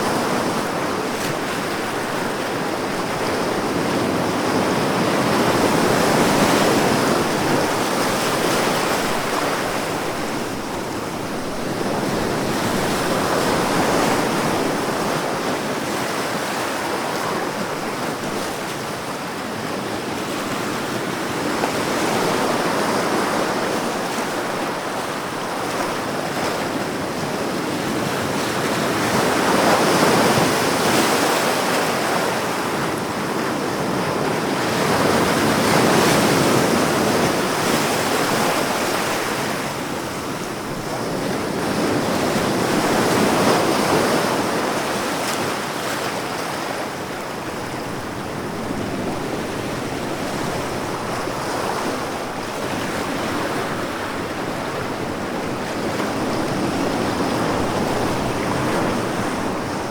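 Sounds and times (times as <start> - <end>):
ocean waves breaking: 20.3 - 59.9.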